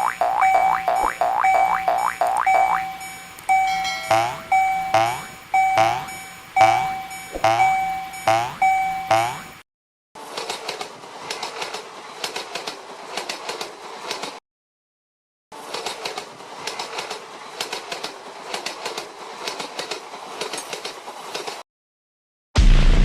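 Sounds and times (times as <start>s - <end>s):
train wheels clattering over rail joints: 10.2s - 14.4s, 15.6s - 21.6s.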